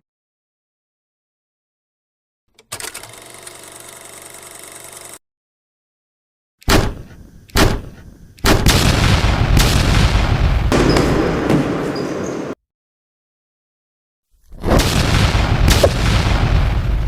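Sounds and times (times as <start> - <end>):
loud gunshot-like blast: 6.7 - 12.0, 14.7 - 17.0.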